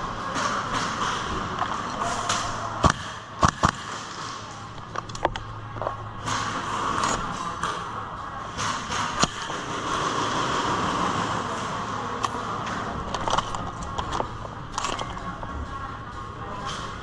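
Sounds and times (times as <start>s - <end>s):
sharp cracks and knocks: 0.4s - 7.5s.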